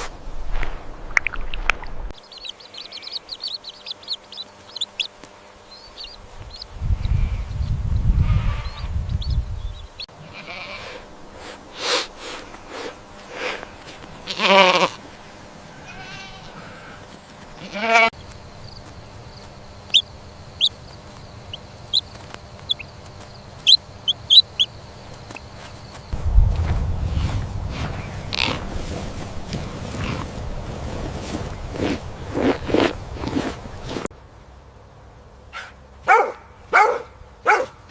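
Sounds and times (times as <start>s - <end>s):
farm animal bleating: 7.0s - 9.1s, 10.2s - 11.0s, 14.2s - 15.1s, 15.7s - 18.2s
low rumble: 26.2s - 31.0s.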